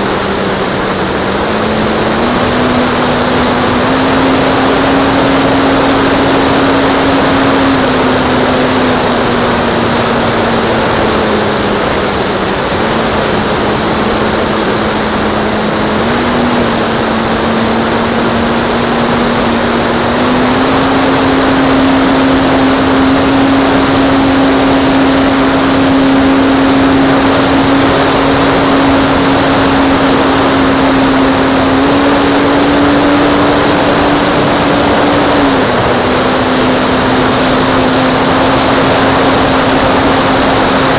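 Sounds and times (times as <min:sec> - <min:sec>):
model airplane motor and propeller: 0:00.0 - 0:40.9.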